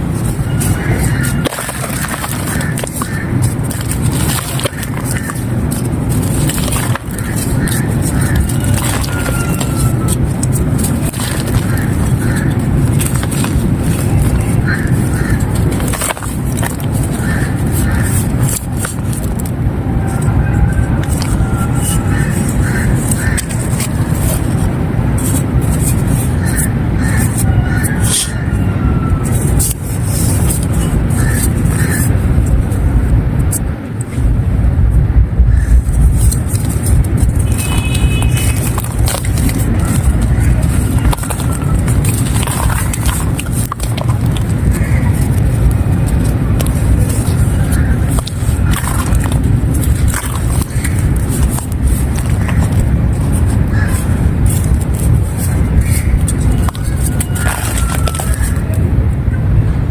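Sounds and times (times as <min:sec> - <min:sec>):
steady low rumble: 0:00.0 - 0:59.9
sharp crackles: 0:00.1 - 0:28.3, 0:34.9 - 0:58.8
clay crumbling and crunching: 0:00.2 - 0:19.6, 0:35.7 - 0:58.8.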